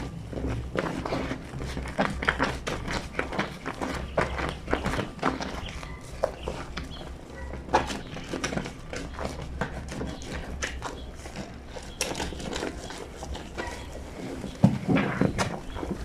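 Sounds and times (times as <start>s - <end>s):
wet fabric scrubbed on washboard: 0.0s - 6.8s.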